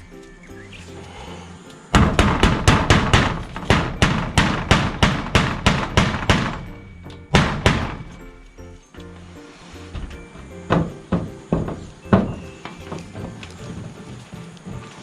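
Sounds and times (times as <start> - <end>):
hammer driving nails: 2.0 - 8.5, 9.9 - 13.0.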